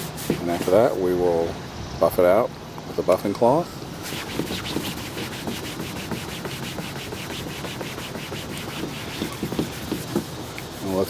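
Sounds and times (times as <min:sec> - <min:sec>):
cloth swishing over plastic: 0:04.0 - 0:11.0.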